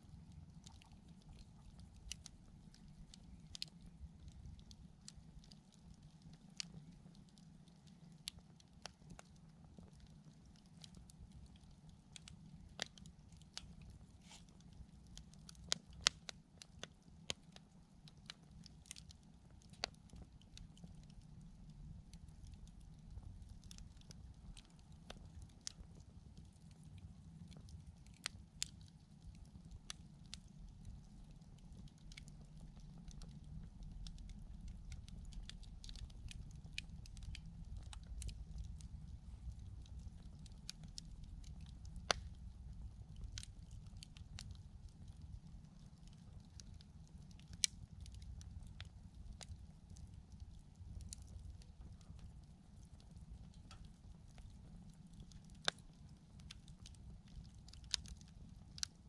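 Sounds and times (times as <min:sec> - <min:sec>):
campfire pops and snaps: 0:00.4 - 0:59.0
low steady rumble: 0:19.3 - 0:59.0.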